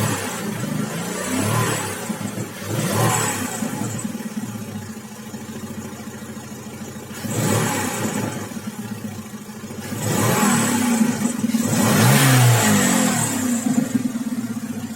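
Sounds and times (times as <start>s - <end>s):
car engine revving: 0.0s - 4.5s, 7.1s - 9.0s, 9.7s - 14.9s.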